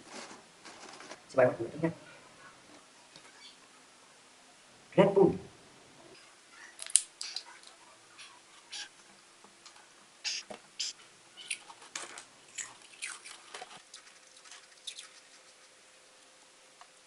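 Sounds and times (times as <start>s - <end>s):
crisp eating crunches: 9.7s - 15.8s
wet chewing: 12.5s - 15.8s.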